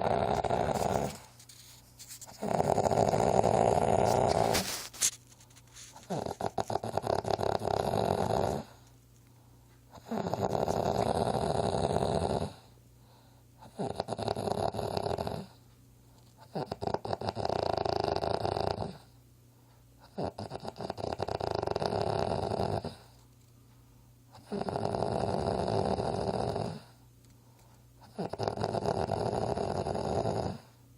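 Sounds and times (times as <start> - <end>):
rattling snores: 0.0 - 1.3, 2.4 - 4.9, 6.0 - 8.9, 10.0 - 12.7, 13.6 - 15.6, 16.4 - 19.1, 20.0 - 23.2, 24.4 - 27.0, 28.0 - 30.8.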